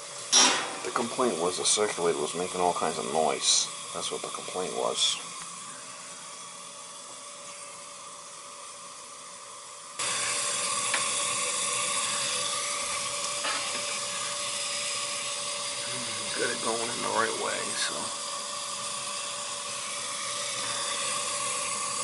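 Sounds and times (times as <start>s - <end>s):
water hissing through pipes: 0.0s - 22.0s.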